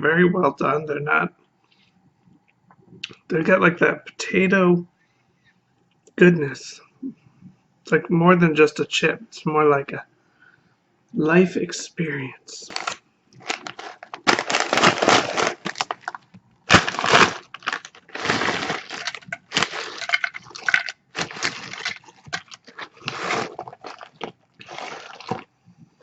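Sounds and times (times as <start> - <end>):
potato chips crunching: 12.6 - 25.5.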